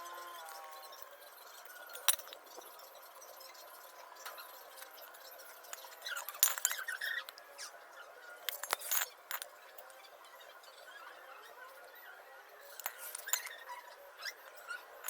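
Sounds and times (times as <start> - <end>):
small hard objects clinking: 0.0 - 7.7, 8.3 - 10.0, 12.6 - 15.0.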